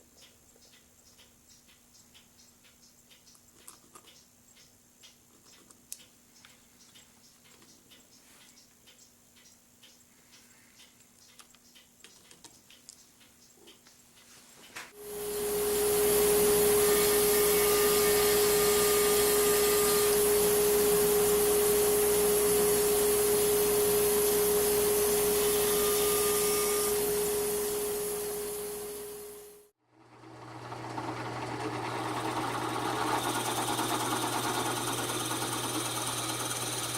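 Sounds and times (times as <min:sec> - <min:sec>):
woodworking power tool running: 0:14.9 - 0:36.9.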